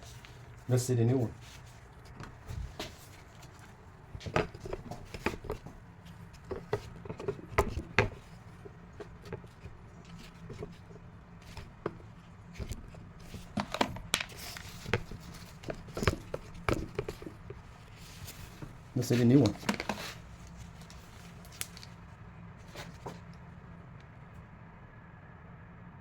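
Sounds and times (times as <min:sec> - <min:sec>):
clicks and knocks of handling tester: 0:01.9 - 0:22.0.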